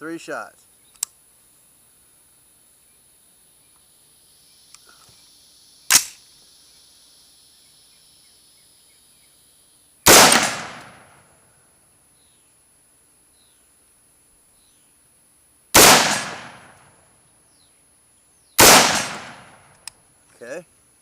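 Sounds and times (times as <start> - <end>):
rifle shots echoing: 10.1 - 11.2, 15.8 - 16.8, 18.6 - 19.7.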